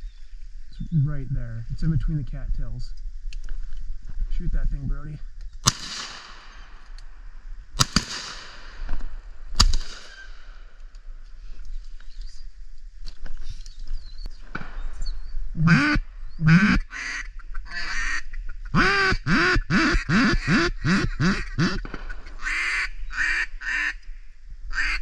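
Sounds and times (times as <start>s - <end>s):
duck quacking: 15.6s - 24.0s, 24.7s - 25.0s.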